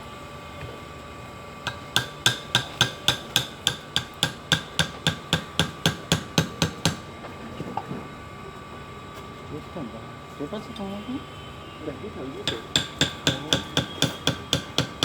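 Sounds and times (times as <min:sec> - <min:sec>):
hammer taps with metallic ring: 0:12.5 - 0:15.0.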